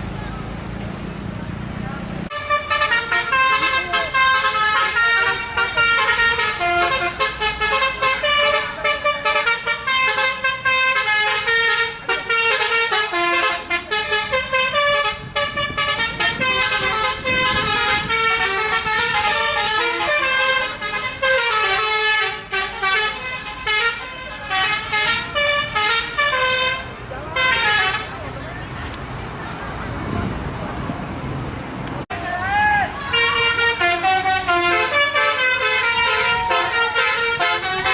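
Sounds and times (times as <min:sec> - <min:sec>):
bus horns playing melodies: 0:02.3 - 0:28.3, 0:32.8 - 0:37.9.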